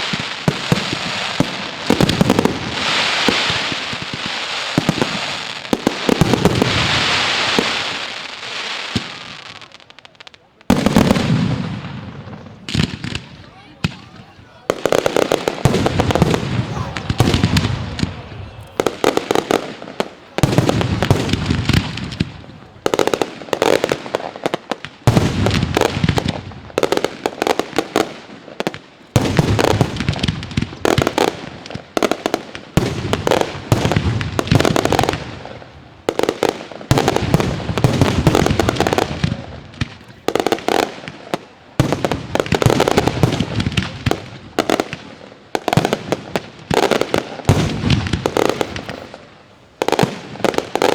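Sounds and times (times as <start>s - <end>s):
fireworks banging and crackling: 0.0s - 50.9s.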